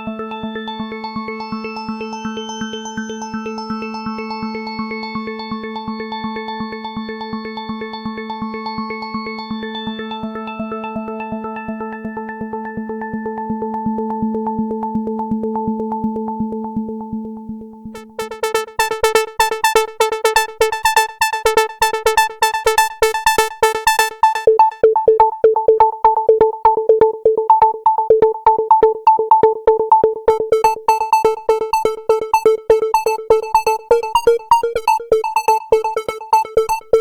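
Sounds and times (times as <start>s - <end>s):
synthesizer plucked note pattern: 16.6s - 37.0s.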